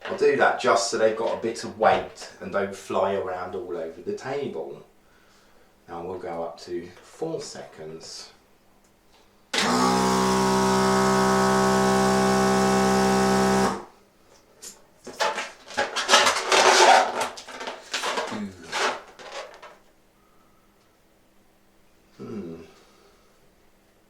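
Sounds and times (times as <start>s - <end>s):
food mixer motor humming: 9.6s - 13.9s
rubbing and rustling: 14.4s - 19.9s.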